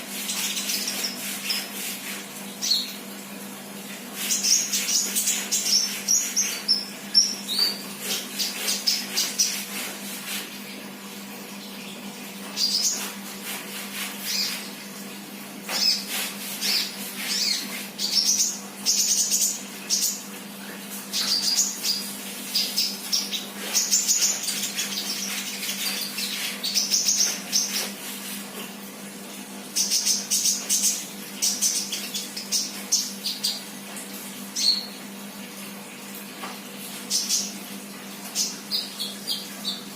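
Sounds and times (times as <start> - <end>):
sunbird chirping and trilling: 4.2 - 9.6, 15.7 - 20.2.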